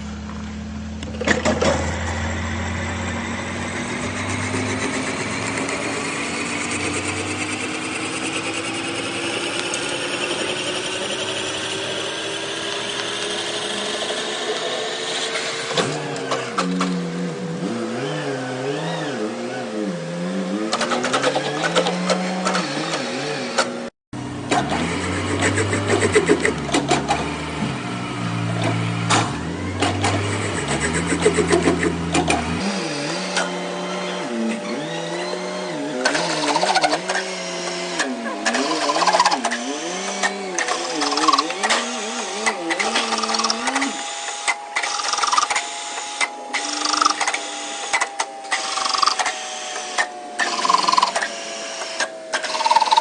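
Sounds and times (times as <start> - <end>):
metal lathe running: 1.0 - 53.0
tool clicks and rattling: 20.7 - 23.8, 34.8 - 53.0.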